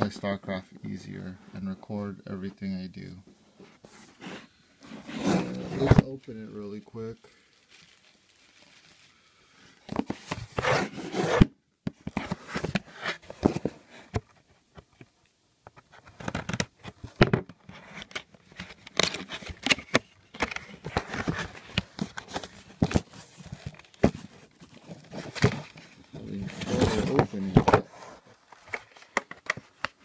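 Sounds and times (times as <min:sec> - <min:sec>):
cardboard and plastic tearing: 0:17.8 - 0:27.9.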